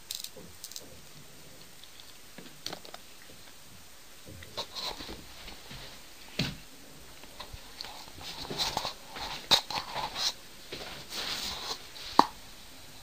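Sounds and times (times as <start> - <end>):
rustling: 4.3 - 12.4.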